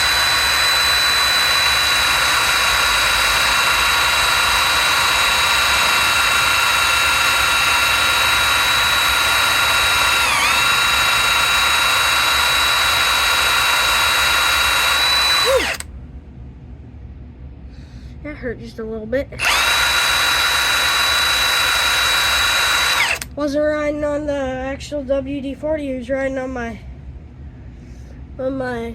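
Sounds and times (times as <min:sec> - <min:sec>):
power drill whining: 0:00.0 - 0:15.9, 0:19.4 - 0:23.3.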